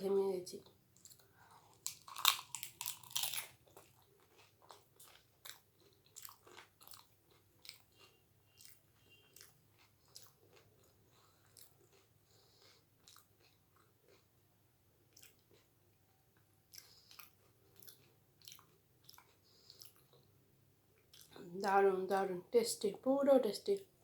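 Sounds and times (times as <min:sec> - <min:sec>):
chewing with soft crunches: 0:00.6 - 0:21.4
crisp shell crunching bite: 0:01.7 - 0:03.8.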